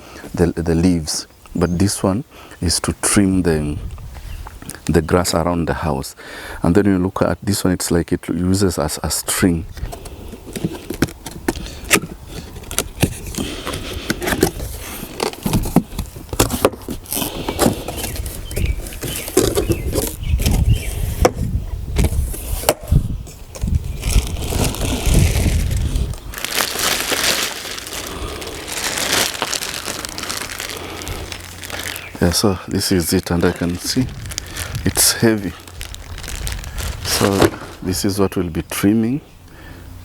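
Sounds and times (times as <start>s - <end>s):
rustling: 23.5s - 38.0s.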